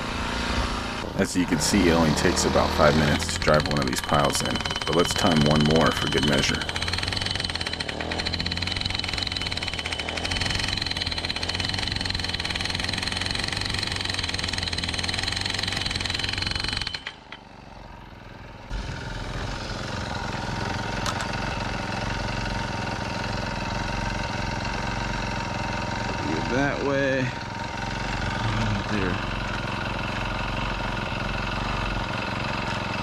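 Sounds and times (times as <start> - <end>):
small engine idling: 0.0 - 33.0
post driver hammering: 0.1 - 9.6.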